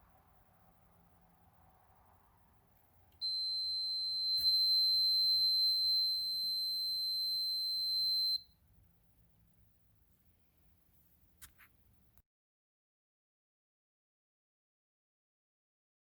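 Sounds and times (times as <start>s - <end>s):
high-pitched continuity tester beep: 3.2s - 8.6s
click: 4.3s - 4.6s.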